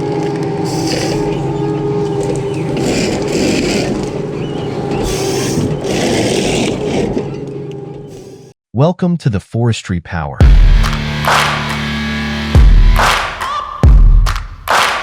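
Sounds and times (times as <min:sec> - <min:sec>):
large machine engine running: 0:00.0 - 0:08.4
hissing bursts: 0:00.7 - 0:07.0, 0:08.1 - 0:08.5.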